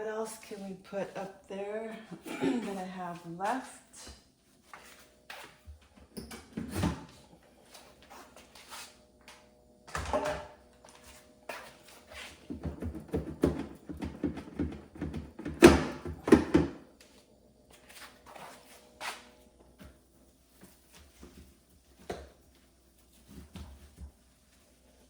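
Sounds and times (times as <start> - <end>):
items knocking in refrigerator: 12.5 - 16.8.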